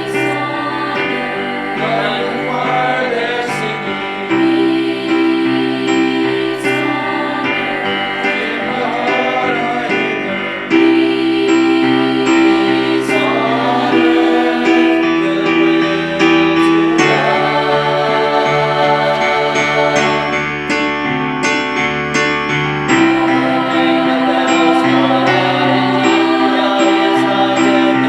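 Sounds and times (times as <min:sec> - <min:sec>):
song with singing: 0:00.0 - 0:21.0, 0:22.9 - 0:28.0.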